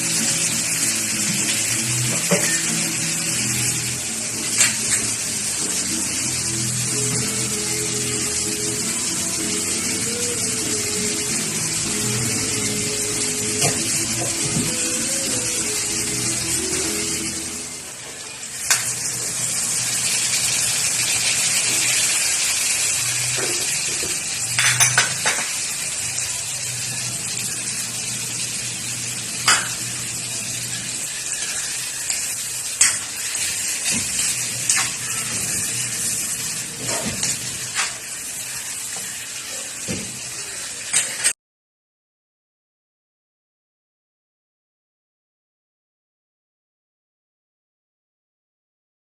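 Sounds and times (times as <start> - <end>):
food sizzling in a pan: 0.0 - 41.4.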